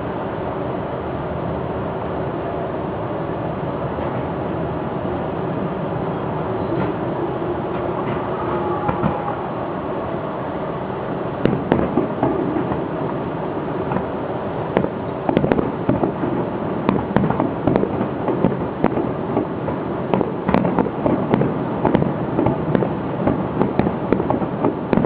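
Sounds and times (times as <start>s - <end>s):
steady rumble: 0.0s - 25.0s
fireworks cracks and bangs: 7.7s - 9.4s, 11.4s - 25.0s.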